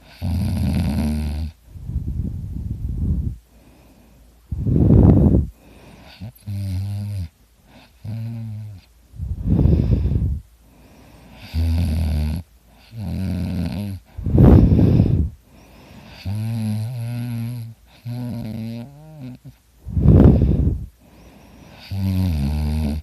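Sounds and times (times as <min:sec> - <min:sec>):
person snoring: 0:00.0 - 0:01.6, 0:11.4 - 0:15.3, 0:16.0 - 0:20.9, 0:21.7 - 0:23.0
loud rushing breaths: 0:09.2 - 0:11.3, 0:14.1 - 0:16.1, 0:19.8 - 0:21.5.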